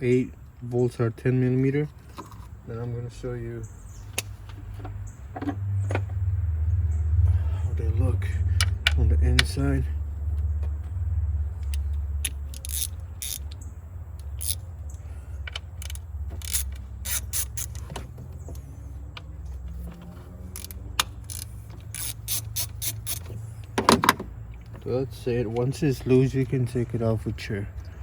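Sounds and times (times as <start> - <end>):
hand ratchet clicking: 11.6 - 14.6, 15.4 - 18.6, 20.5 - 23.8.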